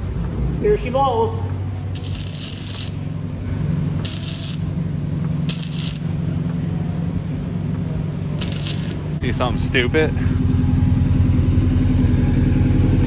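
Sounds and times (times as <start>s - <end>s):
steady low hum: 1.4s - 13.0s
welding crackling bursts: 1.9s - 3.3s, 4.0s - 4.8s, 5.4s - 6.2s, 8.4s - 9.5s.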